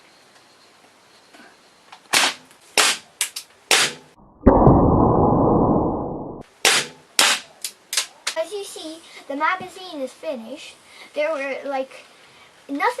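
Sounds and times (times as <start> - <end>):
loud rushing noise: 4.5 - 6.4.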